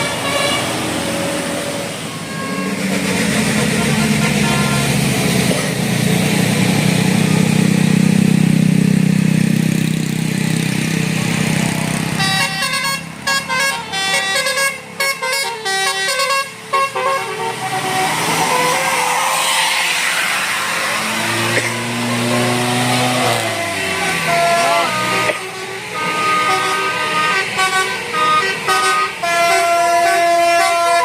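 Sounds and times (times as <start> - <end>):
multi-tone bus horn melody: 0.0 - 5.8, 11.9 - 31.0
vehicle engine running: 2.8 - 13.3.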